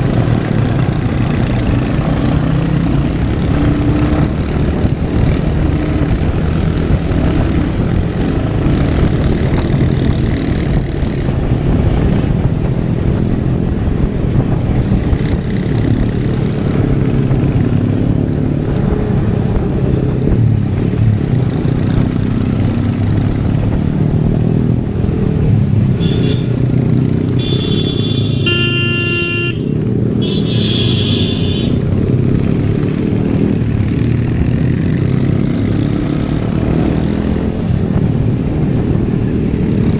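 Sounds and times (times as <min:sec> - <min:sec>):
motorcycle engine running: 0:00.0 - 0:39.9
vehicle horn: 0:26.0 - 0:26.6, 0:27.4 - 0:31.9.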